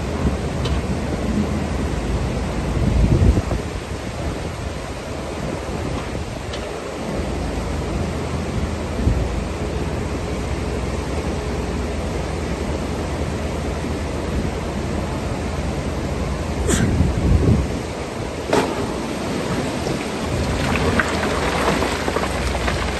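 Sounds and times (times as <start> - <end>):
excavator rumbling: 0.0 - 22.9
gravel and water splashing down: 18.5 - 22.9.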